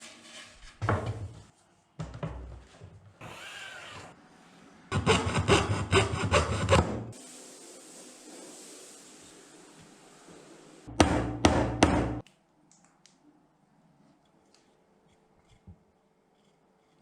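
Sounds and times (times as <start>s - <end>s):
table saw cutting wood: 3.2s - 4.2s, 4.9s - 7.1s.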